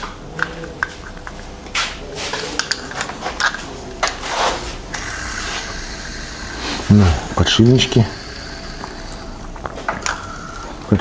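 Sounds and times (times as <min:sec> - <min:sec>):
rustling scrapes: 0:04.2 - 0:04.8.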